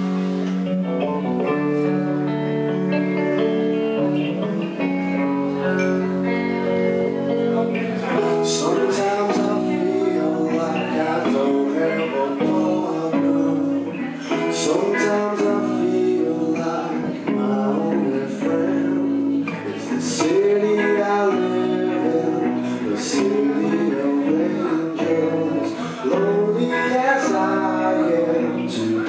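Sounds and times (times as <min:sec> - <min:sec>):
band playing a song: 0:00.0 - 0:29.0
guitar: 0:00.0 - 0:29.0
man singing: 0:07.1 - 0:29.0.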